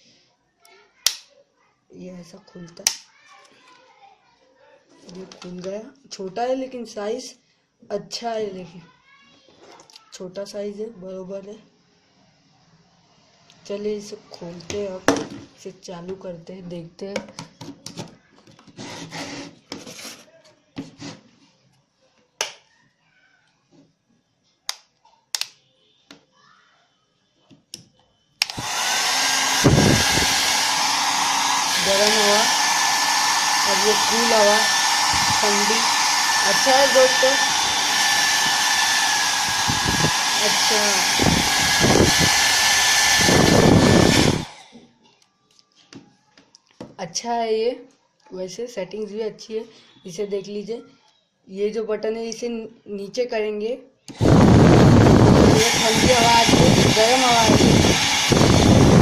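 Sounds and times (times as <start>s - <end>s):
hair dryer blowing with whine: 28.4s - 44.7s, 54.1s - 59.0s.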